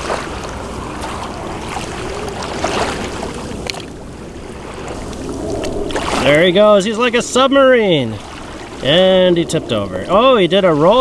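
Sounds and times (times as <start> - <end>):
light splashes: 0.0 - 11.0
small waves washing at shore: 0.0 - 11.0
wind on microphone: 0.0 - 11.0.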